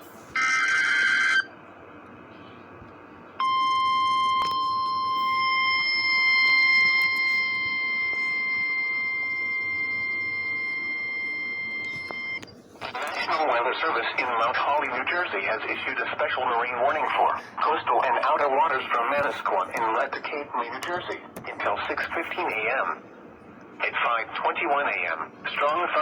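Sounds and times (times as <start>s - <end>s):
steady high alarm beep: 3.4s - 12.5s
radio hiss: 12.0s - 23.0s, 23.8s - 26.0s.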